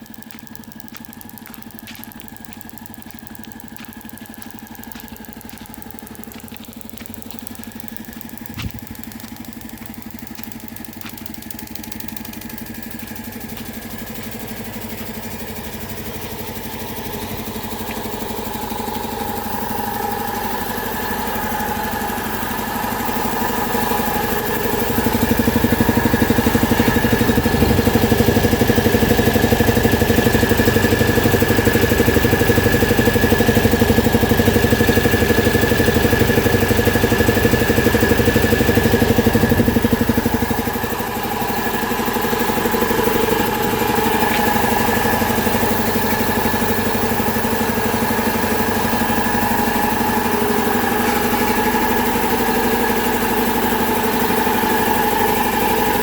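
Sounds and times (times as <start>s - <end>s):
air compressor humming: 0.0s - 56.0s.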